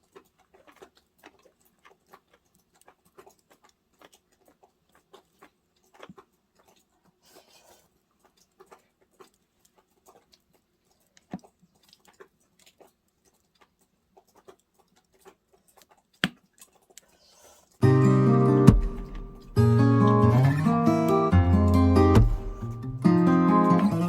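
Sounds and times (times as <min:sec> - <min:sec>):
wood fire crackling: 0:17.8 - 0:24.0.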